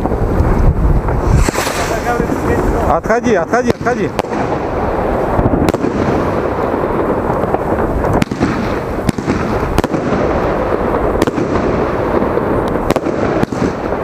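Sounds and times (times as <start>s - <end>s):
firework bangs: 0.0s - 14.0s
firework rushing and crackling: 0.0s - 14.0s.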